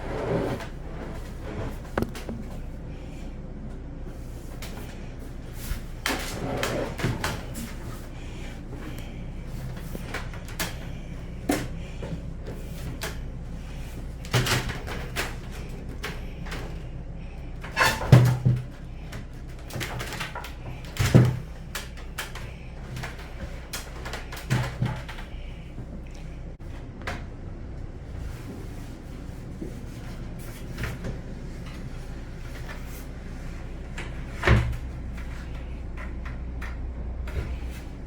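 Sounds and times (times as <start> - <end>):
steady low hum: 0.0 - 38.0
knocks and clunks: 1.7 - 2.6.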